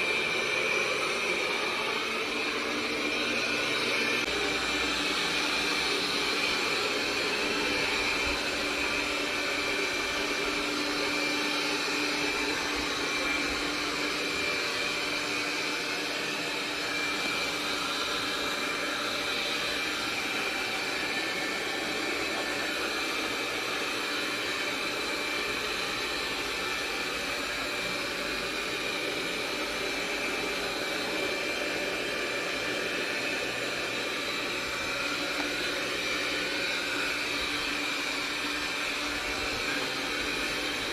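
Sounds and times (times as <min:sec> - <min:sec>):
robot vacuum running: 0:00.0 - 0:40.9.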